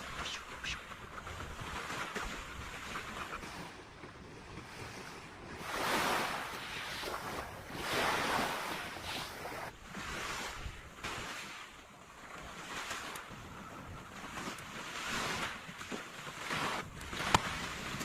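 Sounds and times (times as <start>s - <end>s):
sea waves washing onto shore: 4.4s - 18.0s.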